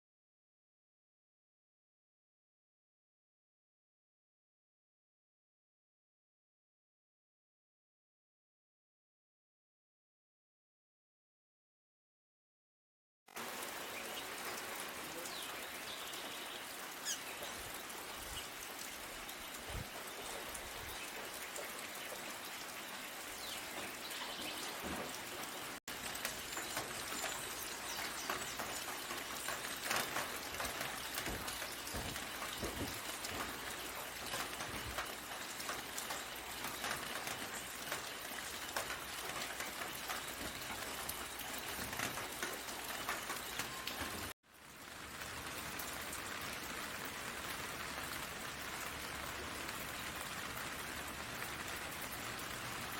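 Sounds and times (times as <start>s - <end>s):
patter of raindrops: 13.3s - 52.9s
rain falling on leaves: 13.3s - 52.9s.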